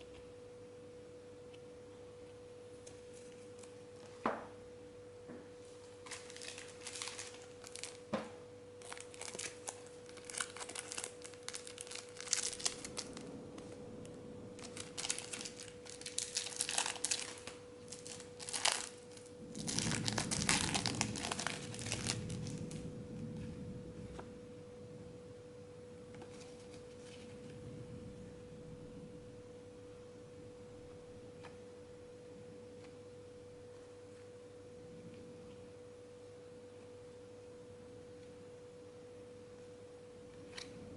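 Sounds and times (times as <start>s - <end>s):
faint steady hum: 0.0s - 40.9s
foil packets tearing and crinkling: 6.0s - 8.1s, 8.8s - 13.3s, 14.6s - 22.8s.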